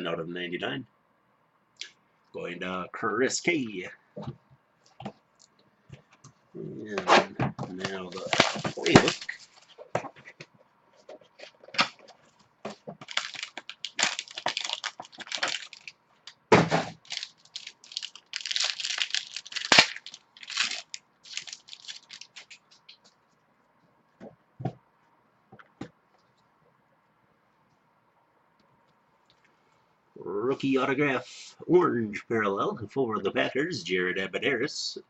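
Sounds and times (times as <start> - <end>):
packaging crinkling and tearing: 7.8 - 9.8, 11.4 - 16.0, 16.8 - 23.0.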